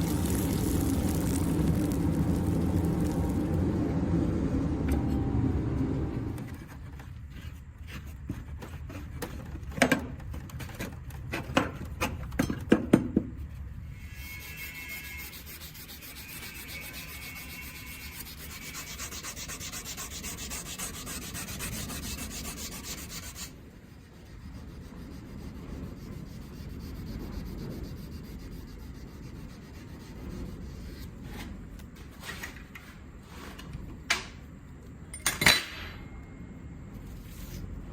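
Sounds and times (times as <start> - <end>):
low rumble: 0.0 - 6.6
rasping scrape on steel: 13.9 - 33.6.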